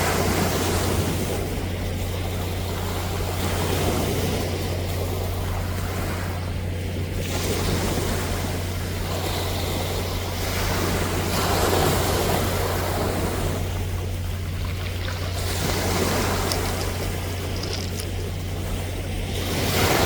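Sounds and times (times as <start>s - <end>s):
constant low hum: 0.0s - 20.0s
sea waves washing onto shore: 0.0s - 20.0s.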